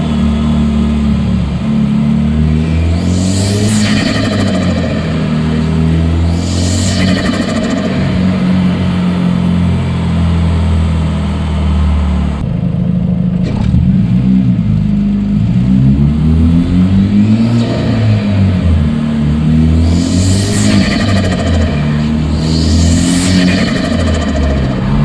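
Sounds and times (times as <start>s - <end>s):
car engine revving: 0.0s - 25.0s
turbo flutter: 3.1s - 9.4s, 19.8s - 25.0s.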